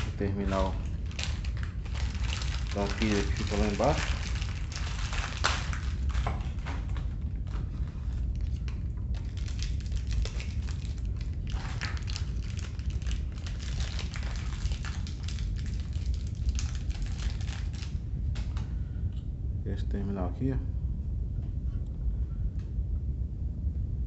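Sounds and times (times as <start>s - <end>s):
plastic parts clicking and rustling: 0.0s - 7.6s, 9.2s - 17.9s
steady low hum: 0.0s - 24.0s.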